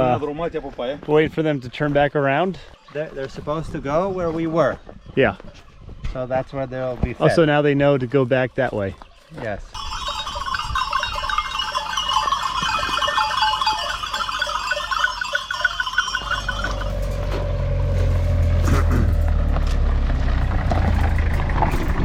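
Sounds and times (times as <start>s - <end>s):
sheep bells jangling: 0.0s - 5.8s, 7.9s - 17.6s.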